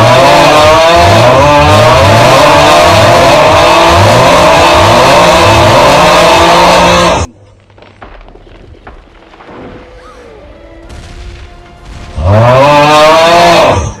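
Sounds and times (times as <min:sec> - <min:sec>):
faint film soundtrack: 0:07.3 - 0:13.3.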